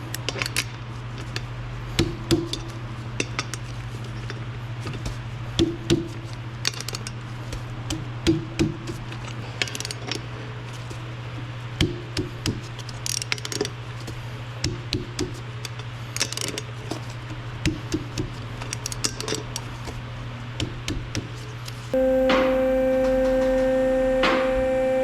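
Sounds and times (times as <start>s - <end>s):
steady low hum: 0.0s - 25.0s
hand tools and metal parts clinking: 6.6s - 7.2s, 9.1s - 10.3s, 12.8s - 14.1s, 15.6s - 17.2s, 18.6s - 19.9s.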